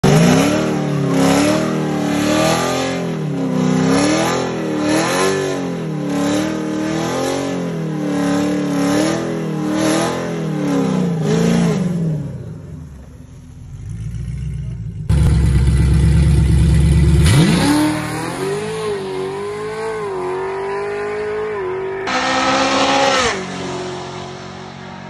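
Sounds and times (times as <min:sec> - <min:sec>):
car engine accelerating through gears: 0:17.1 - 0:25.0.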